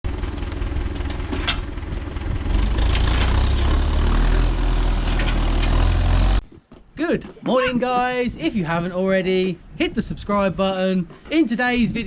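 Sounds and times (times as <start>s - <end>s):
engine humming: 0.0s - 6.5s.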